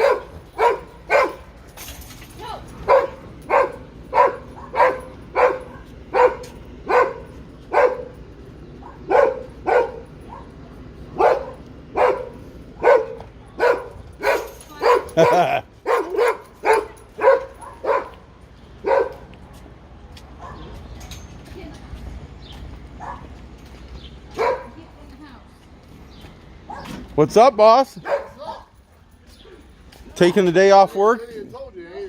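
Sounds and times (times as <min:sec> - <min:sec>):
dog barking: 0:00.0 - 0:01.5, 0:02.8 - 0:08.2, 0:08.8 - 0:19.3, 0:20.4 - 0:20.8, 0:23.0 - 0:23.3, 0:24.3 - 0:24.8, 0:26.7 - 0:27.0, 0:28.0 - 0:28.8.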